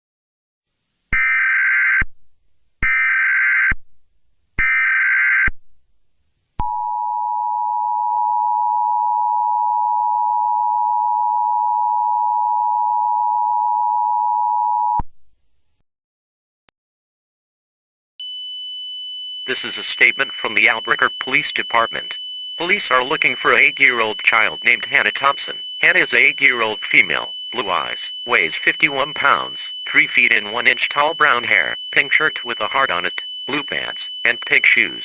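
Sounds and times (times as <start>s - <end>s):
two-tone attention signal: 19.4s - 35.0s
bursts of data tones: 19.5s - 35.0s.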